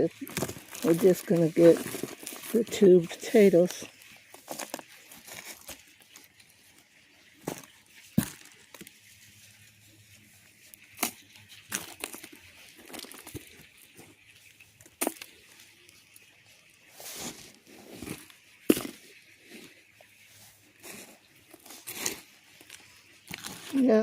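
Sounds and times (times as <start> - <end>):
hands digging in soil: 0.0 - 6.6, 16.8 - 24.0.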